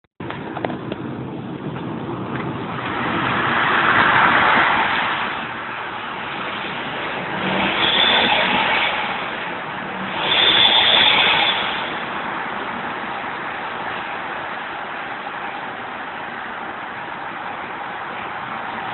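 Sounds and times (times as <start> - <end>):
car engine revving: 2.6 - 15.2
high exhaust whistle: 7.4 - 9.4, 10.0 - 12.3.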